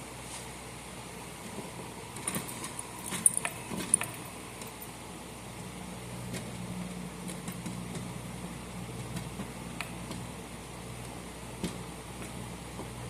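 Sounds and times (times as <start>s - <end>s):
steady low hum: 0.0s - 13.0s
small clicks and taps: 9.1s - 10.2s.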